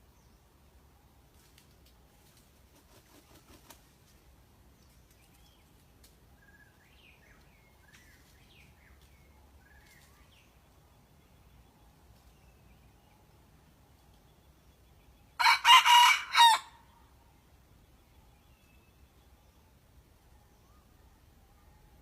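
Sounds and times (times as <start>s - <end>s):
small birds chirping: 2.2s - 15.4s.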